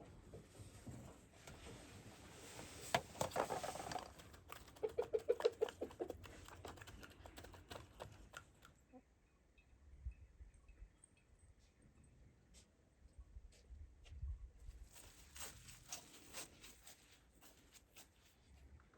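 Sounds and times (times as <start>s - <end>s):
chickens pecking and scratching: 1.6s - 9.0s, 14.8s - 18.9s
chickens clucking: 3.4s - 9.1s.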